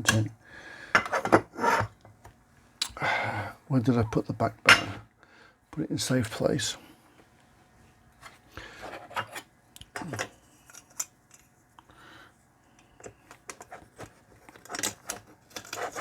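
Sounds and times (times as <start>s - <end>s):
metal scraping on workbench: 1.0s - 1.9s.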